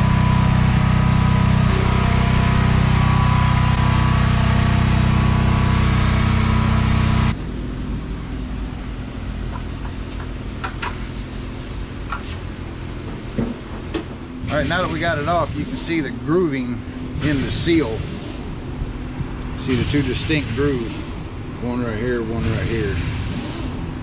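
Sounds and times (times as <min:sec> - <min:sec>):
shop noise: 0:00.0 - 0:07.4
engine drone: 0:00.0 - 0:07.7.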